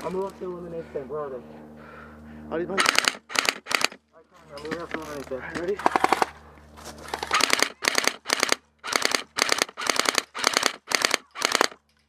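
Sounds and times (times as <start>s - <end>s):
airsoft rifle firing bursts: 2.8s - 4.0s, 7.1s - 11.8s.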